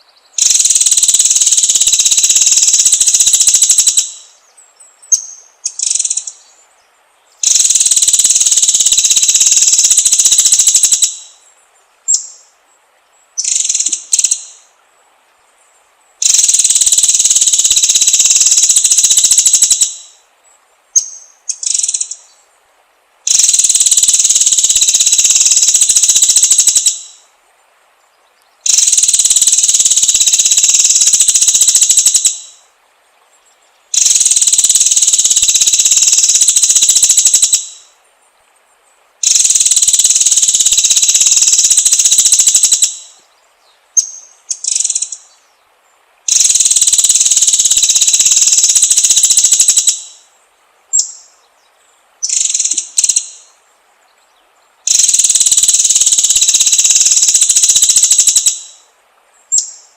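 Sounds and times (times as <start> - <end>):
insect buzzing: 0.0 - 4.4, 7.4 - 11.4, 13.4 - 14.7, 16.2 - 20.2, 23.2 - 27.2, 28.6 - 32.6, 33.9 - 38.0, 39.2 - 43.2, 46.2 - 50.3, 52.2 - 53.6, 54.8 - 58.9.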